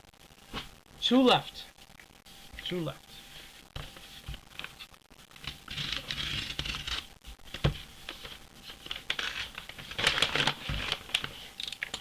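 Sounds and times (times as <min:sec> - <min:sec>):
cardboard scraping and rustling: 0:03.4 - 0:11.5.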